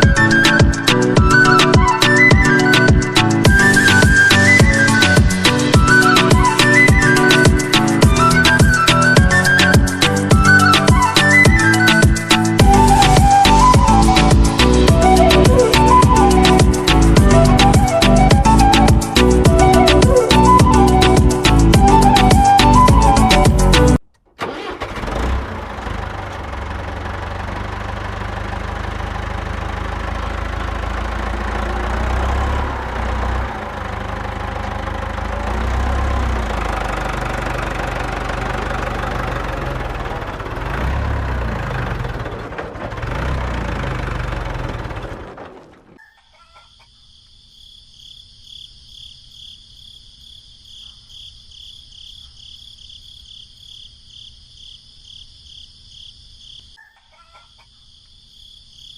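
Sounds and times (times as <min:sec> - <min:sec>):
small tractor engine rumbling: 0:00.0 - 0:46.1
crickets chirping: 0:46.0 - 0:58.9.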